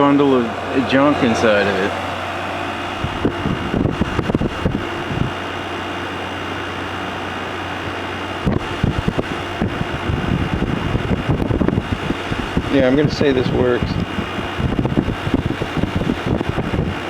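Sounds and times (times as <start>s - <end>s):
air conditioner hum: 0.0s - 17.0s
low bumps and rustles: 0.6s - 5.4s.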